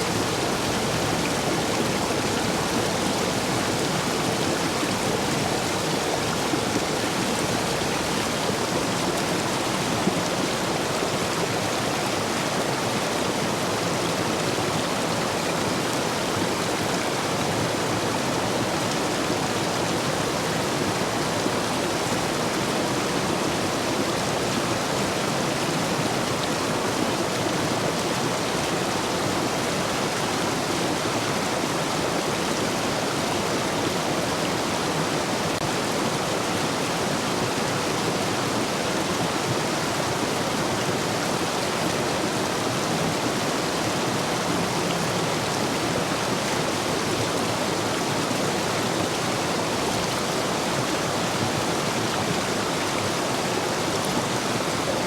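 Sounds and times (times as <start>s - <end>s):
stream rushing over stones: 0.0s - 55.0s.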